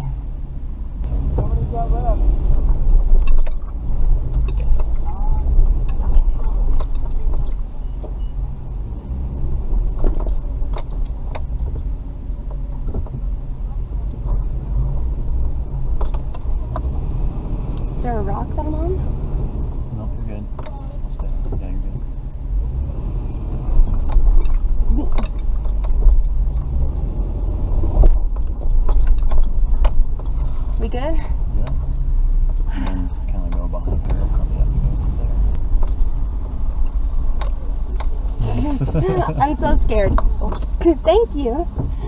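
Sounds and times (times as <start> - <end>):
engine low rumble from cabin: 0.0 - 42.0
sharp knocks and clicks: 2.5 - 8.2, 9.8 - 13.3, 14.1 - 17.0, 23.7 - 27.0, 27.9 - 38.4
knocks and clatters over rocks: 23.8 - 26.9, 28.0 - 34.3.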